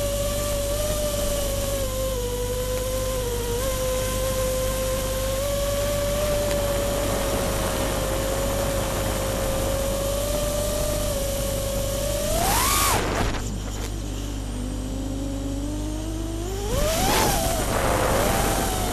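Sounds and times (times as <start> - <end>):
drone motors whining: 0.0 - 18.9
rushing hiss: 16.8 - 18.9.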